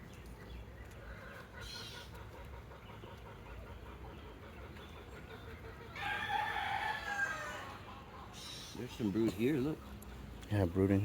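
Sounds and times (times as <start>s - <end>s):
rooster crowing: 6.0s - 7.9s.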